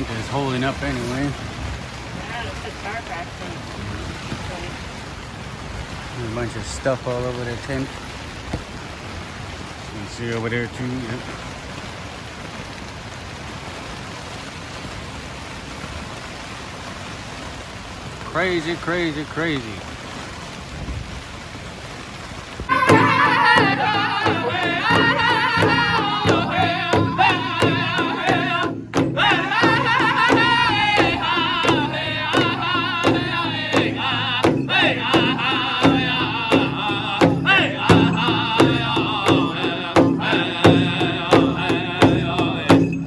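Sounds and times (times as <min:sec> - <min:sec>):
singers' high wavering voices: 0:22.7 - 0:43.0
steady beat on big drum: 0:22.7 - 0:43.0.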